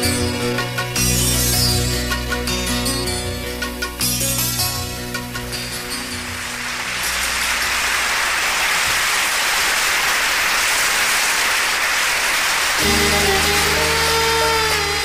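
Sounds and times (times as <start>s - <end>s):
music with held instrumental notes: 0.0s - 7.8s, 12.8s - 15.0s
rain-like hiss: 3.6s - 15.0s.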